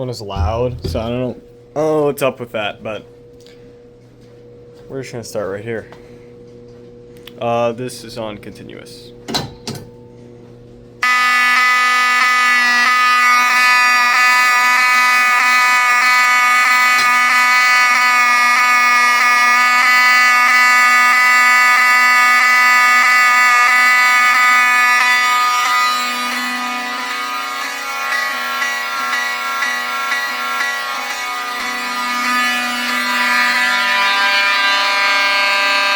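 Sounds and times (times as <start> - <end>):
fire alarm horns buzzing: 0.4 - 1.5, 11.0 - 35.9.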